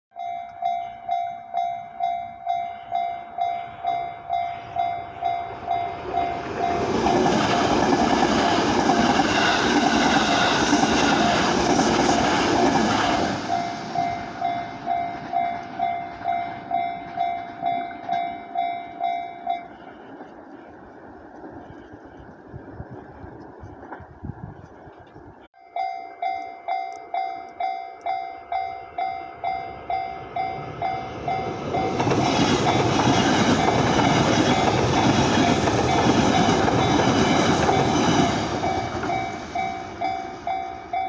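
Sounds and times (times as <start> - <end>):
level crossing alarm bell: 0.1 - 7.3, 13.4 - 19.8, 25.6 - 32.1, 32.7 - 41.0
train rumble and wheel clatter: 0.2 - 25.5, 27.5 - 41.0.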